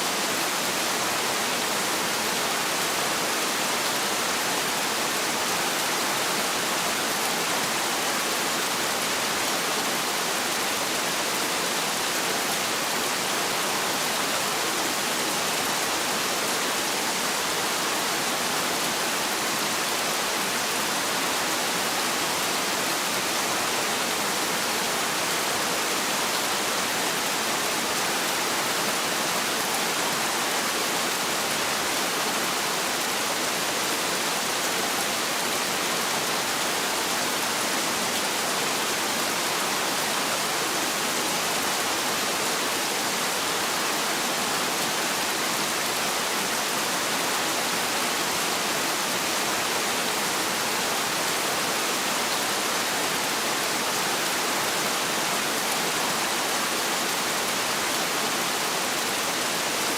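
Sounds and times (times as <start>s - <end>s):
heavy rain falling: 0.0s - 59.9s.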